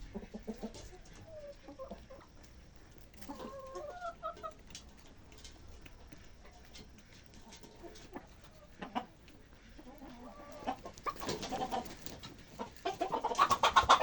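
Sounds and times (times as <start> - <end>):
chickens clucking: 0.0 - 14.0.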